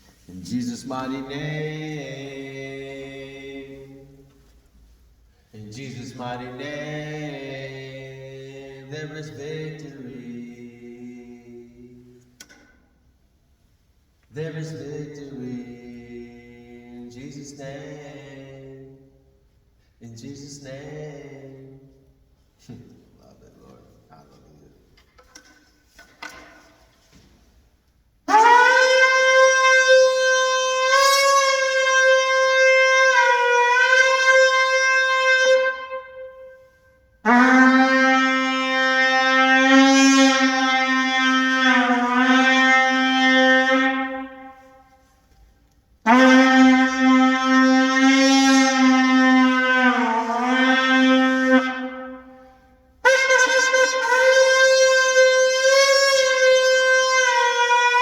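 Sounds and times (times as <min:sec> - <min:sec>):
horn blown in long blasts: 0:00.2 - 0:12.7, 0:28.2 - 0:45.3, 0:46.0 - 0:58.0.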